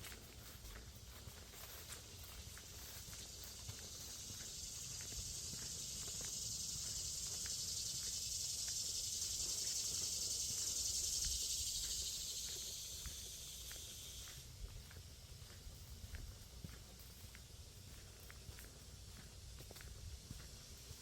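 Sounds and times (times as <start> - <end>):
footsteps on trail: 0.0 - 21.0
high insect buzz: 2.3 - 14.5.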